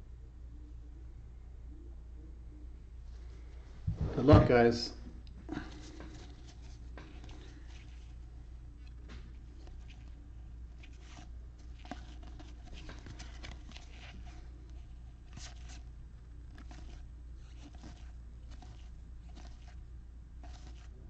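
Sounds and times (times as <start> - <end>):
steady low hum: 0.0 - 21.0
trading cards scratching together: 9.4 - 19.8, 20.4 - 21.0.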